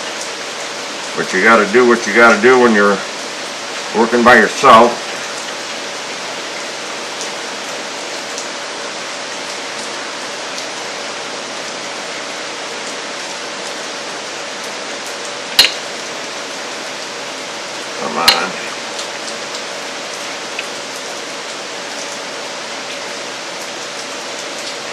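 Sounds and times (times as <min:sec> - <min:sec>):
sharp click: 0:15.6 - 0:15.8.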